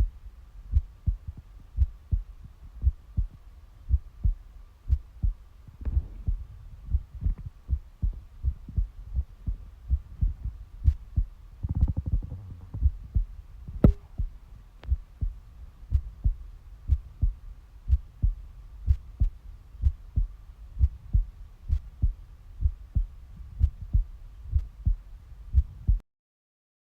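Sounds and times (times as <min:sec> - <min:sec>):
faint steady hum: 0:00.0 - 0:26.0
heartbeat thumps: 0:00.0 - 0:26.0.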